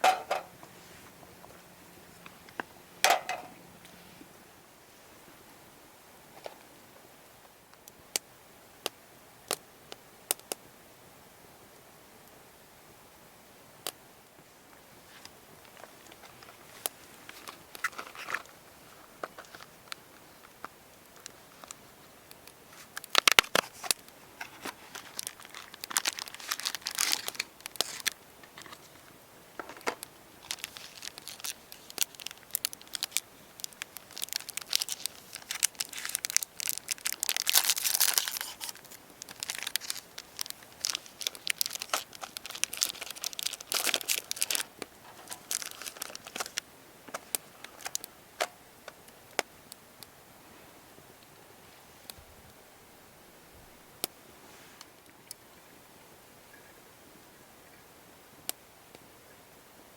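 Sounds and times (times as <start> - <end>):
crinkling and rustling: 0.0 - 4.3, 14.4 - 49.5.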